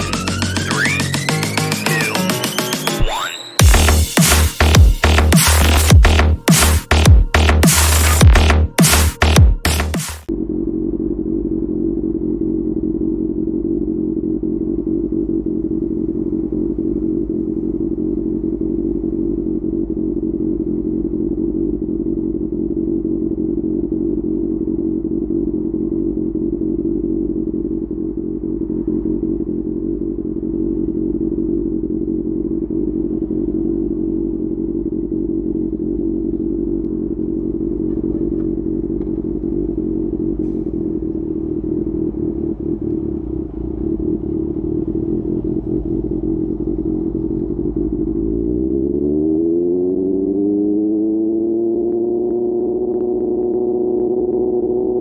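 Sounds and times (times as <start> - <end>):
motorcycle engine idling: 10.3 - 48.7.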